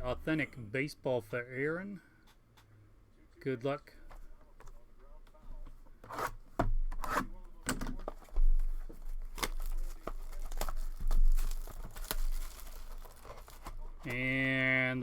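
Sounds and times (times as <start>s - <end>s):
wrapping tearing and crinkling: 8.7s - 14.4s.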